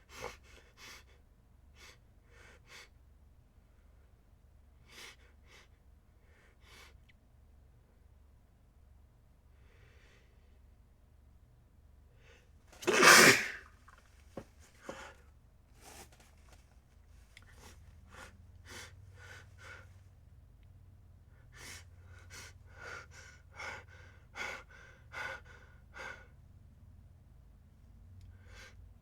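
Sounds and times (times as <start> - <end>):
person sneezing: 12.8 - 13.7.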